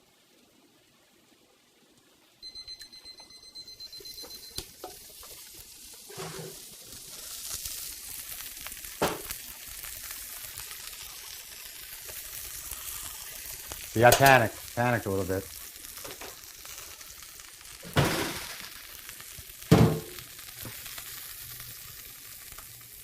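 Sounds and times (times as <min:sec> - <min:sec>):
thermometer alarm beeping: 0:02.4 - 0:04.7
steak sizzling in a pan: 0:02.6 - 0:23.0.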